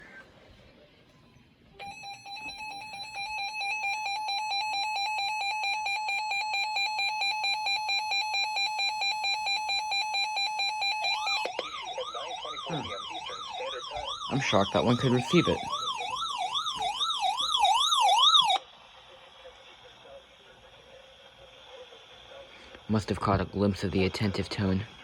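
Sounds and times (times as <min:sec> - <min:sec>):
warbling siren-like alert tone: 0:01.8 - 0:18.6.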